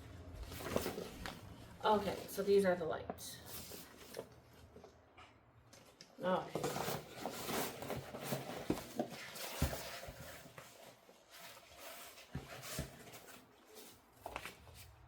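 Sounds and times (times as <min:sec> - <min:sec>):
packaging rustling and crinkling: 0:00.3 - 0:02.4, 0:05.8 - 0:15.0.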